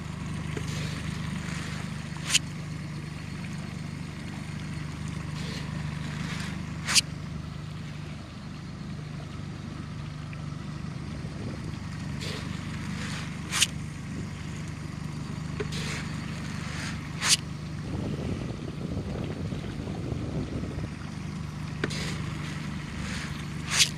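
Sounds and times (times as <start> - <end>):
boat motor humming: 0.0 - 23.9
scraping swishes of flung pellets: 13.0 - 13.7, 23.0 - 23.9.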